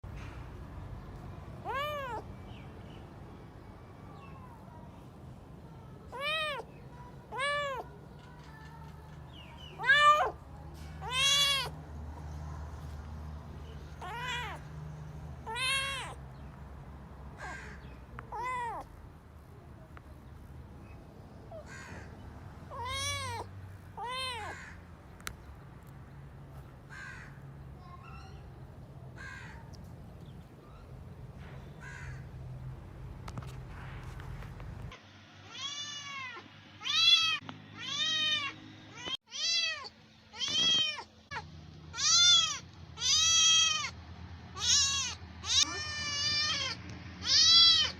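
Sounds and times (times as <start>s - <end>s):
cats meowing: 1.6s - 2.4s, 6.1s - 8.0s, 9.6s - 11.8s, 13.7s - 14.8s, 15.4s - 16.4s, 17.4s - 19.0s, 21.5s - 24.8s, 35.5s - 44.0s, 44.6s - 47.9s.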